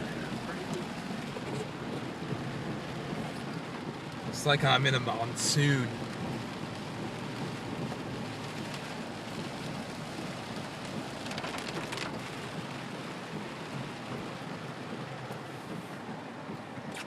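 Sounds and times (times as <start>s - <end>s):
heavy rain pouring: 0.0s - 16.9s
crackling: 10.9s - 12.6s.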